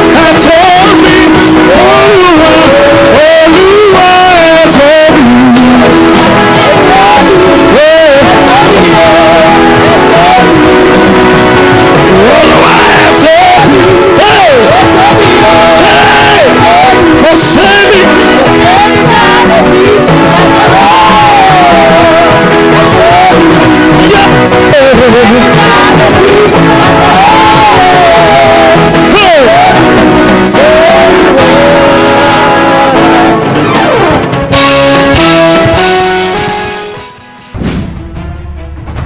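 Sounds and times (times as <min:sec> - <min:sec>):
gospel music with singer and band: 0:00.0 - 0:38.0.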